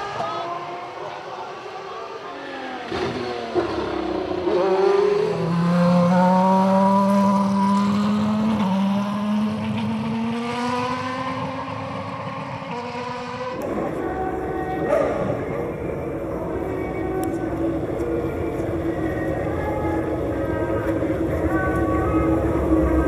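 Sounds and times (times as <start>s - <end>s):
racing car engine at high revs: 0.0s - 14.0s.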